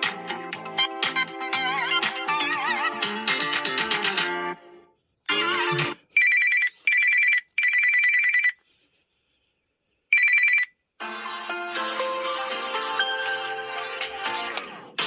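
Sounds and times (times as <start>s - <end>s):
melodic phone ringtone: 5.4s - 8.6s, 10.2s - 10.7s
pulsing two-tone telephone ring: 6.2s - 8.6s.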